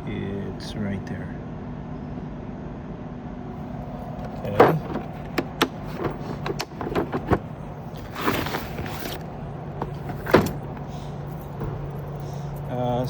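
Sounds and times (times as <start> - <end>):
steady low hum: 0.0 - 13.0
tools clicking and knocking: 4.2 - 7.4
sliding scrape: 4.2 - 9.2.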